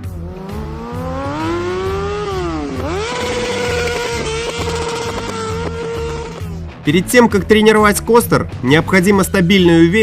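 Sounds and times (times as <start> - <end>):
motorcycle engine revving: 0.0 - 6.9.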